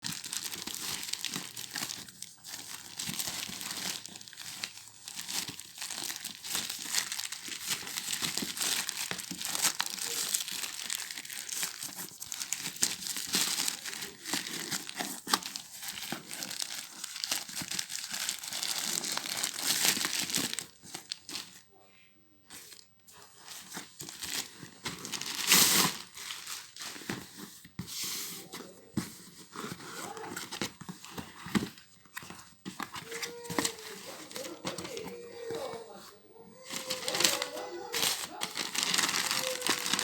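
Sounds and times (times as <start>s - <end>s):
wrapping tearing: 0.0s - 21.6s, 23.6s - 27.2s, 32.9s - 35.8s, 36.6s - 40.0s
packaging crinkling and rustling: 0.0s - 21.7s, 22.5s - 40.0s.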